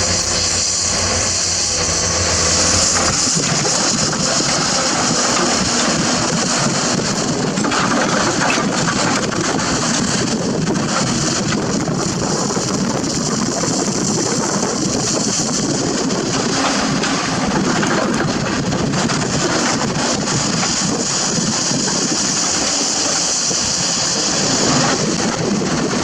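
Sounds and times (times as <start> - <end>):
dense even hiss: 0.0 - 7.5, 19.2 - 26.0
excavator diesel engine running: 0.0 - 26.0.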